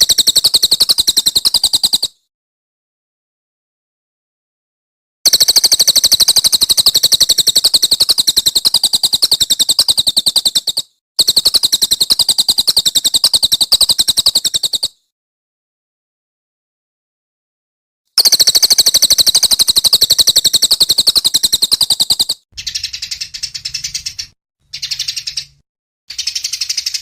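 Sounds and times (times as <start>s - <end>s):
songbird rattling trill: 0.0s - 2.2s, 5.3s - 15.0s, 18.2s - 27.0s.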